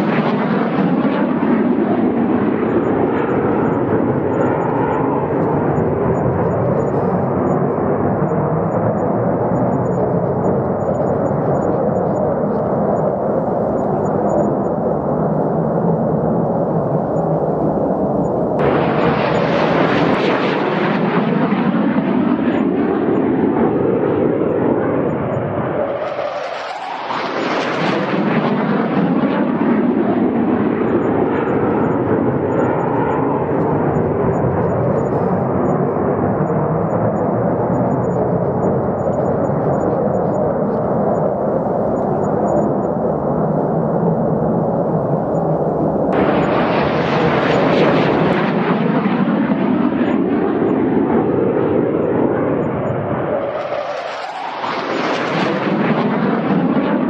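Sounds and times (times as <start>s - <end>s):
jet engine rumble: 0.0s - 57.0s
jet passing hiss: 18.6s - 22.6s, 46.1s - 50.1s.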